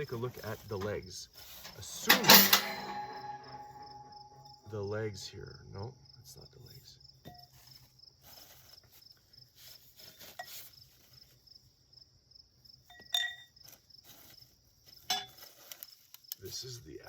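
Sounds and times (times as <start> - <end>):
metal stove parts clinking: 0.7 - 4.8, 15.1 - 15.4
cricket chirping: 0.7 - 17.0.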